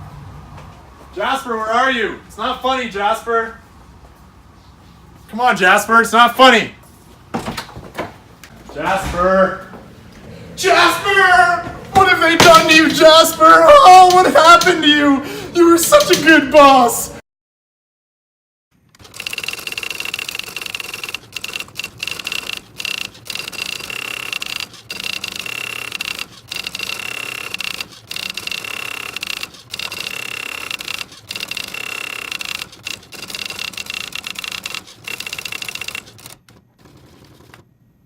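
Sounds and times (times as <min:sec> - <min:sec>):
typewriter clattering: 0:12.0 - 0:14.8, 0:19.0 - 0:37.6.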